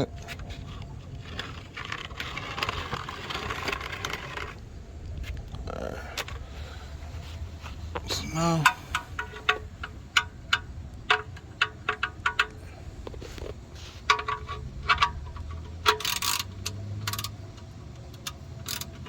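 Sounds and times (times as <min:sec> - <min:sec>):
scraping rattle: 0:00.0 - 0:04.6, 0:05.2 - 0:17.4
metallic clicks of wrench: 0:14.1 - 0:19.0.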